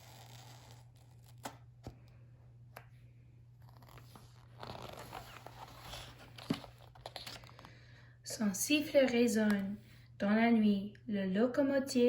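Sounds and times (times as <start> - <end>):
low electrical hum: 0.0 - 12.0
paper page rustling: 3.6 - 7.7.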